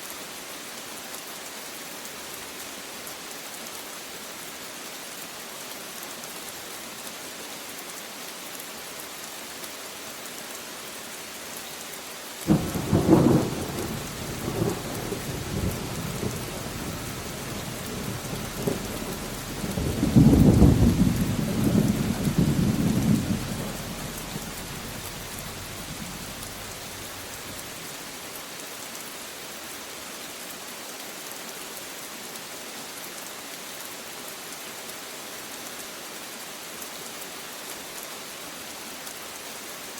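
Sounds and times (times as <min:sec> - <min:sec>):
rain hissing: 0:00.0 - 0:39.9
thunder rumbling: 0:12.5 - 0:27.8.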